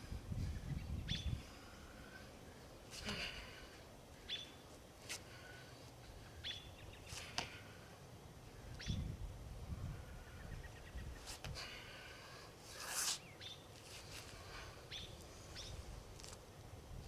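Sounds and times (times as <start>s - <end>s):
bird chirping: 0.5s - 1.4s, 4.2s - 4.7s, 6.3s - 7.2s, 8.7s - 9.1s, 10.1s - 11.3s, 13.2s - 13.7s, 14.9s - 15.8s.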